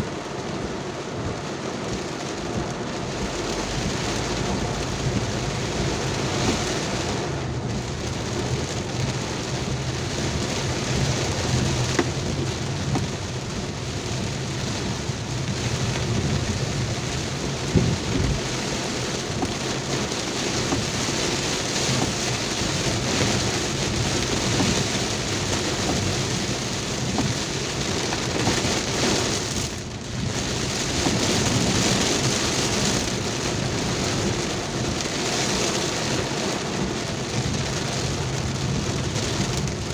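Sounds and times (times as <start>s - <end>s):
heavy rain: 0.0s - 39.9s.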